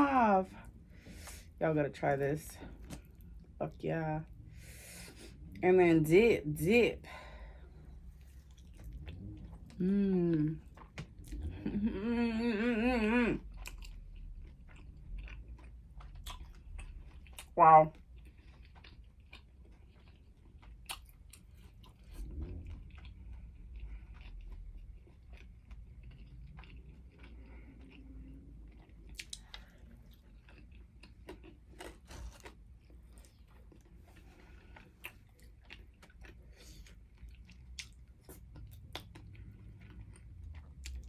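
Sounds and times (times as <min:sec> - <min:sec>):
crunchy chewing: 0:13.4 - 0:41.0.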